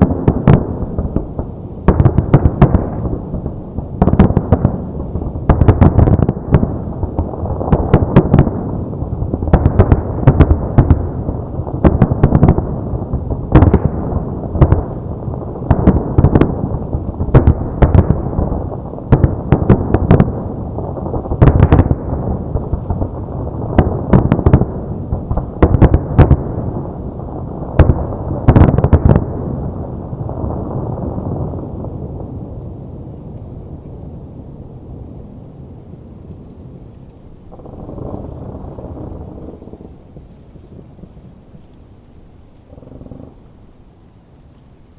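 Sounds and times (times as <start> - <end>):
rolling rumble of booms: 36.2 - 44.0
firework shells bursting: 37.0 - 43.8.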